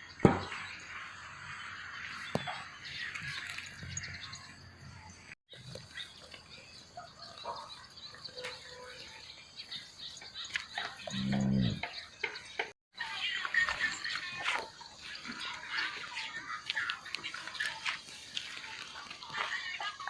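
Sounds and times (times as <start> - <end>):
outdoor background sounds: 0.0 - 20.0
low farm animal call: 11.0 - 11.8.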